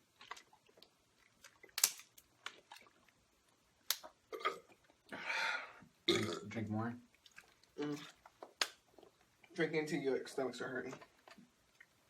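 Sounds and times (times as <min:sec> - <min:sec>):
person swallowing: 0:04.3 - 0:05.0, 0:06.1 - 0:06.5.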